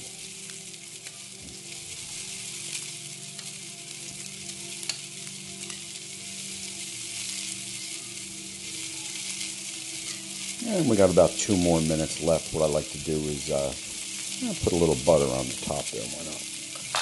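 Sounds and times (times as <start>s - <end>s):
fish sizzling in a pan: 0.0s - 17.0s
spatter pops: 16.7s - 17.0s.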